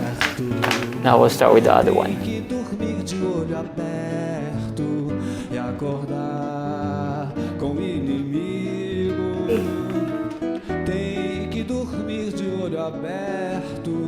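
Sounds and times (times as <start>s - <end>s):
person singing: 0.0s - 4.0s, 5.5s - 11.7s
strummed acoustic guitar: 0.0s - 14.0s.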